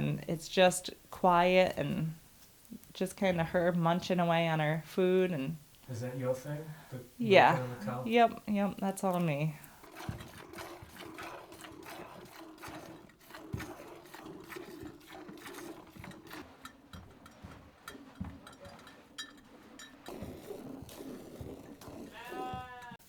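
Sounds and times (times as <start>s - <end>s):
cow chewing: 7.4s - 23.0s
milk squirting into pail: 9.5s - 22.7s.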